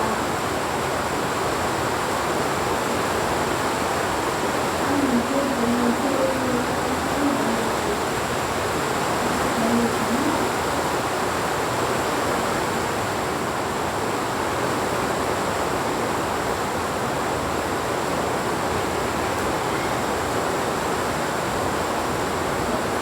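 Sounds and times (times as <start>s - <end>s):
heavy rain hissing: 2.9s - 17.2s.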